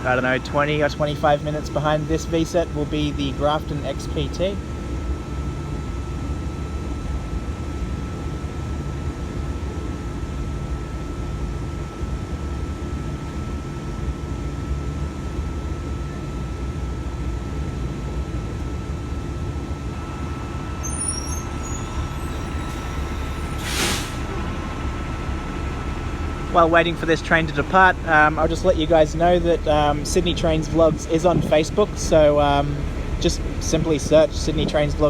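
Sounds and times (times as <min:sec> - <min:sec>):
electric train humming: 0:00.0 - 0:08.3, 0:15.7 - 0:35.0
short loud hiss: 0:22.6 - 0:24.4.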